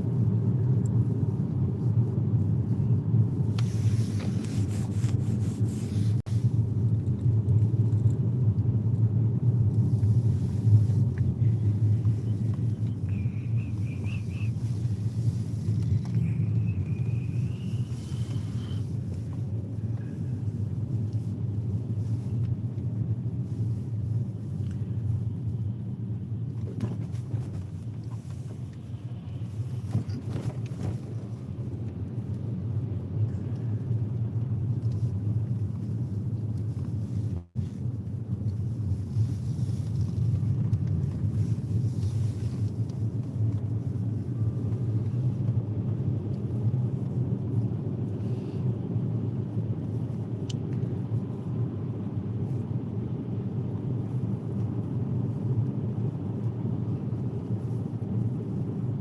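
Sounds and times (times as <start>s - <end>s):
car engine noise: 0.0s - 59.0s
road and tyre rumble: 0.0s - 59.0s.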